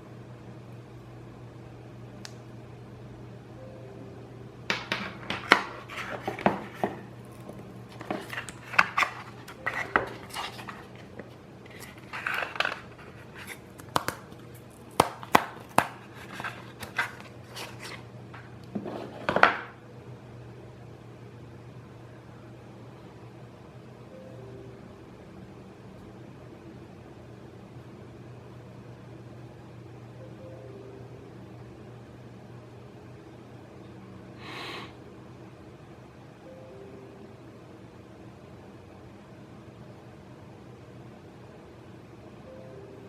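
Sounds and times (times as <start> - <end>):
steady low hum: 0.0 - 43.0
packaging clicks and rustles: 5.4 - 18.0.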